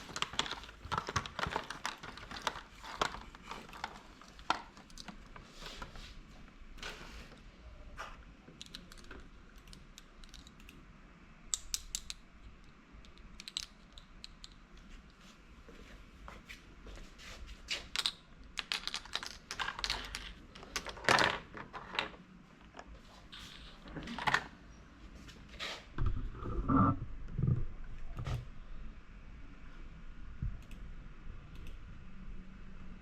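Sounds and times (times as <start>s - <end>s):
plastic toy pieces clicking: 8.6s - 10.7s, 11.5s - 12.2s, 13.0s - 14.6s, 18.0s - 21.4s.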